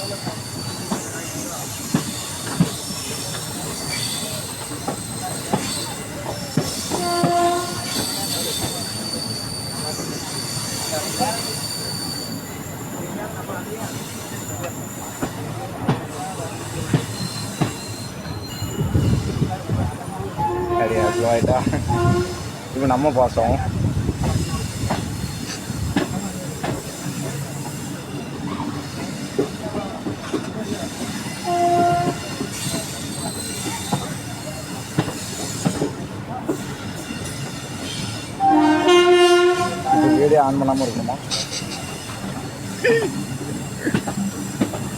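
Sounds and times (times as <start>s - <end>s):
train wheels squealing: 0.0s - 22.7s, 24.2s - 44.9s
train horn blast: 6.9s - 8.1s, 20.4s - 22.5s, 31.4s - 32.5s, 38.4s - 40.5s.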